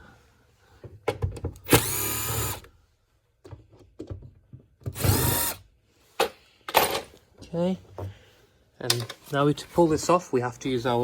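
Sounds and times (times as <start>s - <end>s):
power driver whining: 1.6s - 2.7s, 4.9s - 5.6s.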